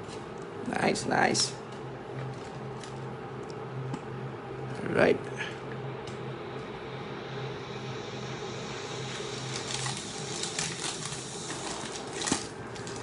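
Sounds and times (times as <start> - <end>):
low room hum: 0.0 - 13.0
card pack crinkling and rustling: 9.6 - 13.0.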